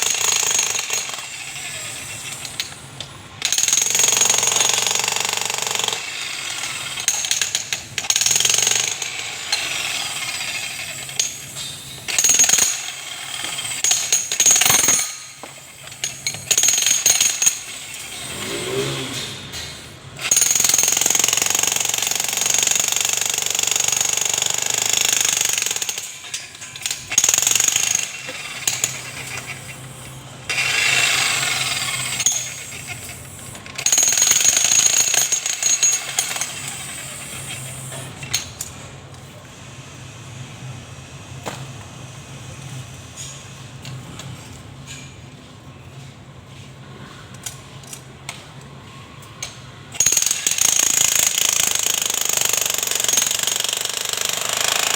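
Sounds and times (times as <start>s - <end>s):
demolition hammer chiselling concrete: 0.0s - 2.7s, 3.5s - 15.2s, 16.0s - 37.9s, 50.0s - 54.9s.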